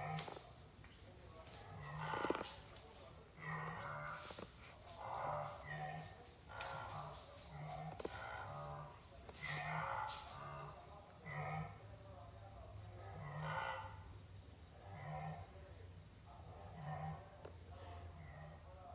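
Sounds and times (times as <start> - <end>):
wildebeest grunting: 5.0 - 11.8, 13.1 - 14.0.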